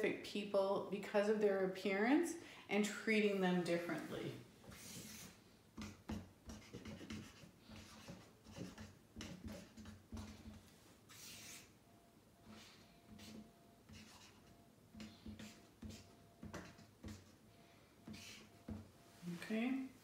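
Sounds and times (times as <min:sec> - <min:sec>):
pen scratching handwriting: 0:04.7 - 0:11.7, 0:13.2 - 0:17.4, 0:18.1 - 0:18.5.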